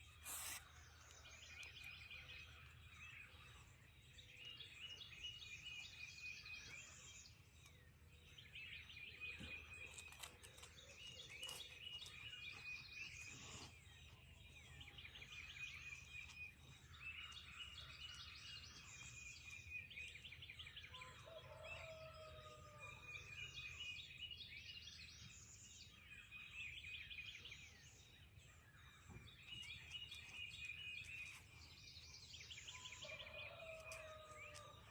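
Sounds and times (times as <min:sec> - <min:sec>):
songbirds chirping and trilling: 0:00.0 - 0:34.9.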